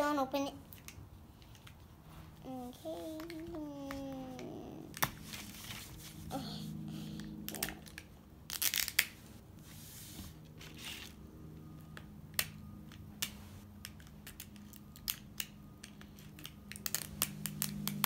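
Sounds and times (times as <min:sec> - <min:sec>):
plastic packaging tearing: 0:08.5 - 0:09.2
sharp clicks and snaps: 0:12.0 - 0:18.0.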